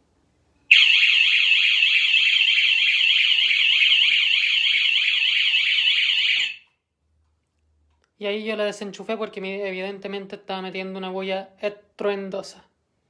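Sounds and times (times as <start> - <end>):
electronic siren wailing: 0.7 - 6.6.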